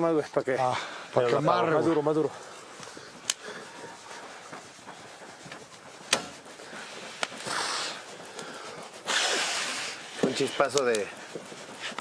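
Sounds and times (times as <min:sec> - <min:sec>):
campfire wood snapping: 0:03.2 - 0:03.5, 0:07.2 - 0:09.2, 0:10.3 - 0:11.1.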